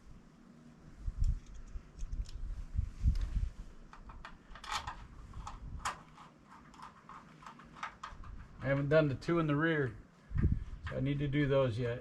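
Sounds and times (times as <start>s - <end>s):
low rumbling handling noise: 1.0s - 9.6s, 10.3s - 11.7s.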